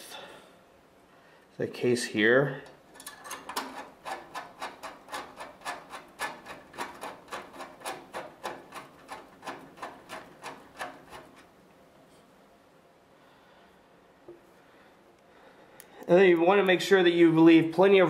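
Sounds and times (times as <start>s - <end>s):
drive rails scraping metal bay: 2.9s - 11.5s.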